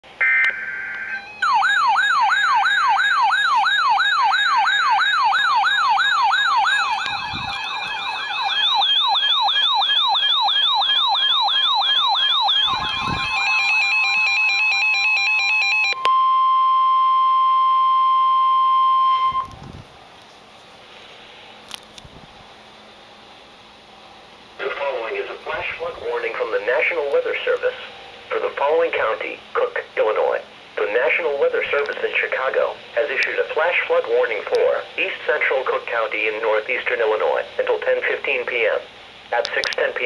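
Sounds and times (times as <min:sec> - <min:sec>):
stepped beeping: 0:00.2 - 0:16.0
electronic siren-like wails: 0:00.2 - 0:16.1
steady alert tone: 0:12.4 - 0:15.9.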